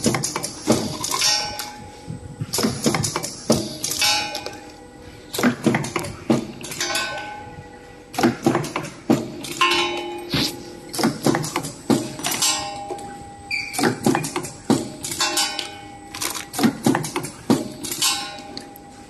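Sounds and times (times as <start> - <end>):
metallic clanks and clinks: 5.4 - 7.5, 9.4 - 10.3, 10.9 - 18.9.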